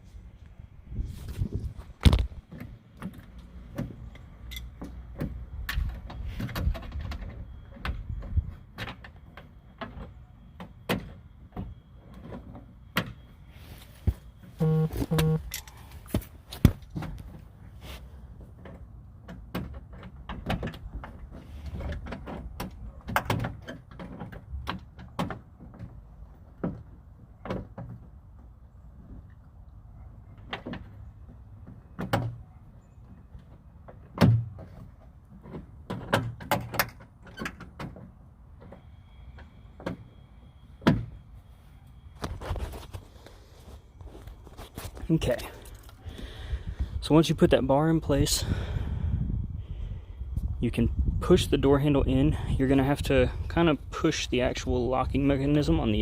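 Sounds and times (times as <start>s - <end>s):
short tones: 14.6s - 15.7s.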